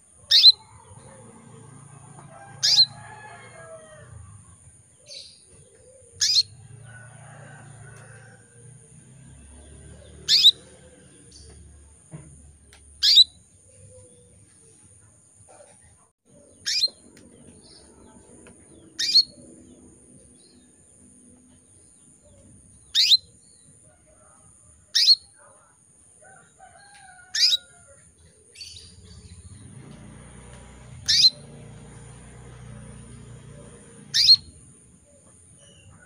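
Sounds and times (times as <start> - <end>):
canary chirping: 0.2 - 1.9, 2.5 - 3.0, 5.1 - 8.1, 9.4 - 11.9, 12.7 - 14.0, 16.5 - 23.7, 25.0 - 25.4, 27.4 - 27.7, 31.0 - 31.6, 33.0 - 34.8.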